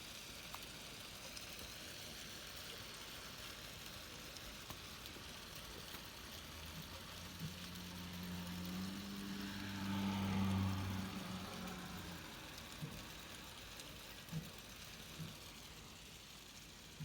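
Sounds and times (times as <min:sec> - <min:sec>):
icy rain hissing: 0:00.0 - 0:17.0
vehicle passing: 0:06.4 - 0:13.6.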